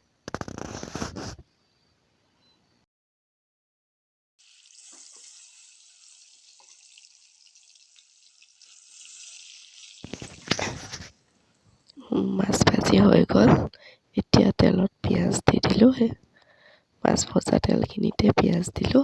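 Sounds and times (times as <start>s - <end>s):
fish sizzling in hot oil: 4.4s - 10.8s.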